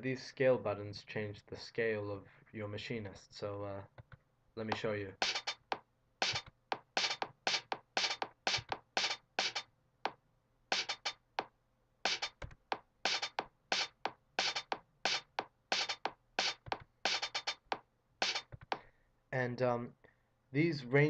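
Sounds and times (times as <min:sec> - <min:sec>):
drum machine hi-hat and snare hits: 0:04.7 - 0:18.8.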